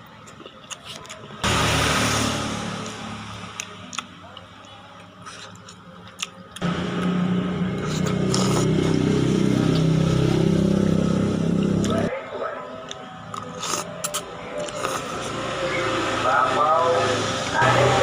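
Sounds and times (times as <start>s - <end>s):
vehicle engine running: 6.6s - 12.1s.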